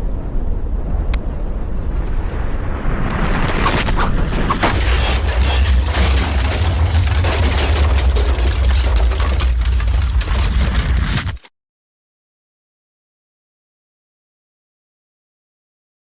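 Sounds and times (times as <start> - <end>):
deep volcanic rumble: 0.0 - 11.4
sharp cracks and booms: 1.8 - 11.4.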